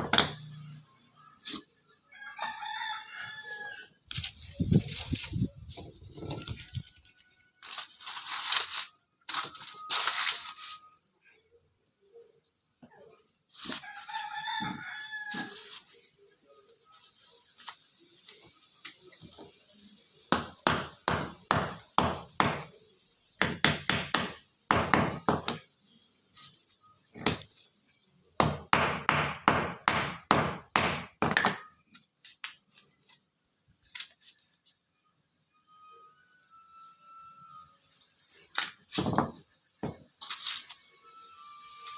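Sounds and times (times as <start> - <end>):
rooster crowing: 2.1 - 4.0, 13.8 - 15.7.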